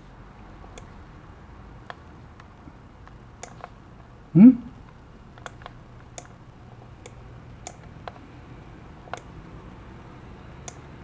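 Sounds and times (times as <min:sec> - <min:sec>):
computer mouse clicks: 0:00.7 - 0:01.0, 0:01.8 - 0:04.1, 0:04.8 - 0:06.4, 0:07.0 - 0:08.3, 0:09.0 - 0:09.5, 0:10.6 - 0:11.0.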